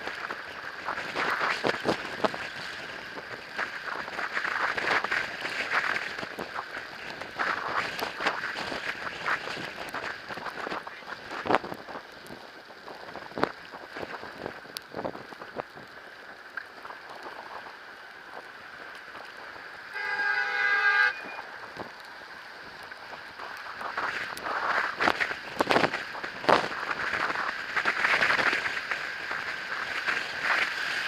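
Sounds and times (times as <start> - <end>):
e-bike riding through snow: 0.0 - 31.0
horn honk: 19.9 - 21.5.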